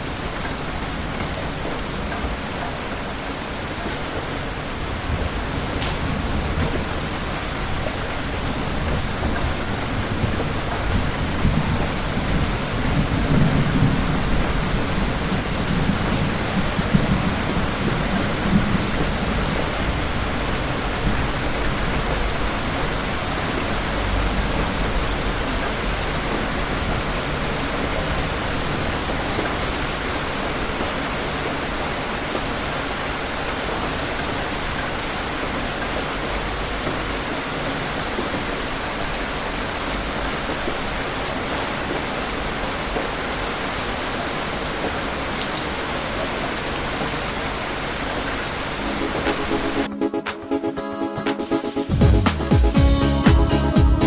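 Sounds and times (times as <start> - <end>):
heavy rain falling: 0.0 - 49.9.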